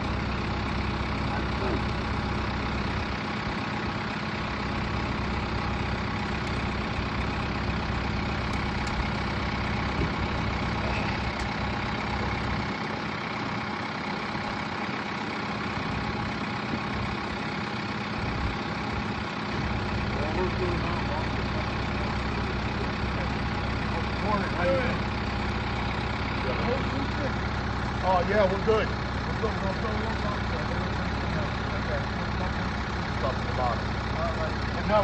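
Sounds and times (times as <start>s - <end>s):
heavy engine idling: 0.0s - 35.0s.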